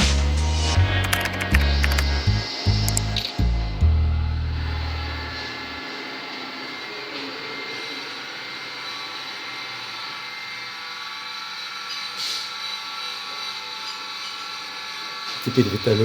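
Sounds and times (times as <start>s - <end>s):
metal lathe whining: 4.6s - 16.0s.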